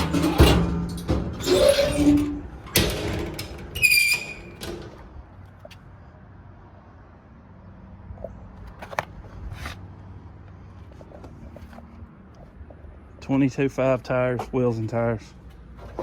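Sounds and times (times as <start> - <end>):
high squeak: 0.0 - 5.0.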